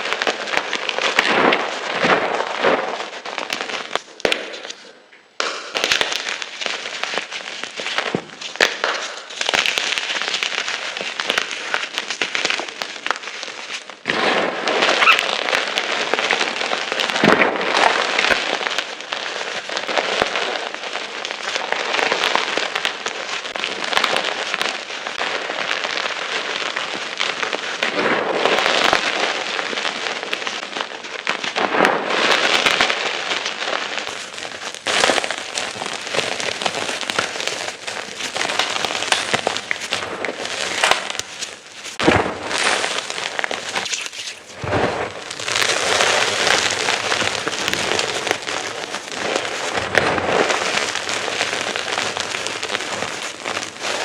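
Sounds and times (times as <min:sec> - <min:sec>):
chalk crushing and crunching: 0:34.1 - 0:44.7.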